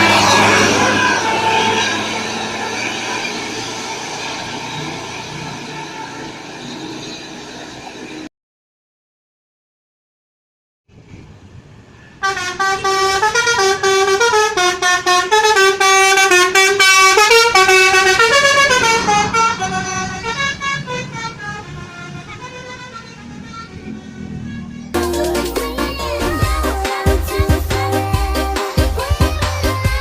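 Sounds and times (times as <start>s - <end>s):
air-horn trumpets playing a melody: 0.0s - 3.2s, 12.2s - 23.6s.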